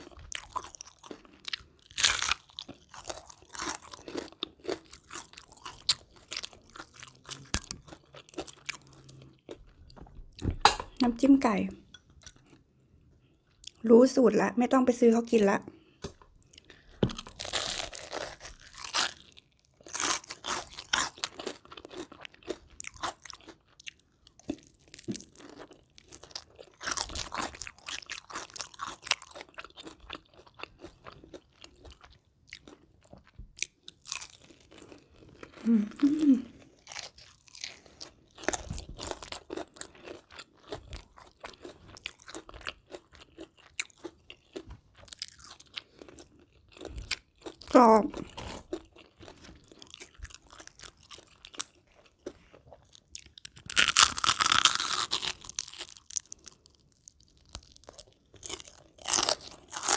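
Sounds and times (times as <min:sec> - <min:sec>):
crunchy fried chicken biting: 0:00.0 - 0:09.2, 0:17.0 - 0:32.8, 0:49.7 - 0:59.9
chewing: 0:00.0 - 0:09.9, 0:15.8 - 0:59.9.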